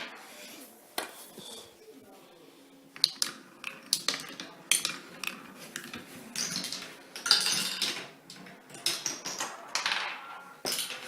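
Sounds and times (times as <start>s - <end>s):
marbles clacking on wooden track: 3.0s - 11.0s.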